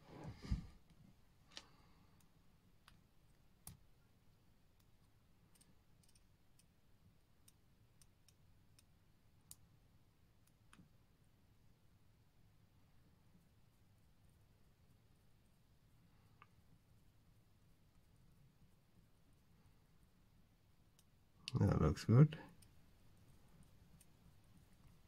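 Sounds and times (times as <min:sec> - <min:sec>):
small clicks of tweezers: 0:03.6 - 0:03.8, 0:04.7 - 0:06.8, 0:07.4 - 0:09.7.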